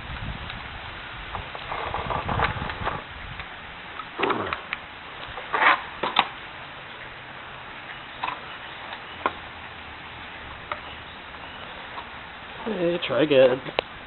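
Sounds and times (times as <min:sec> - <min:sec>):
steady hiss: 0:00.0 - 0:14.0
sharp scrapes and clicks: 0:04.2 - 0:06.3.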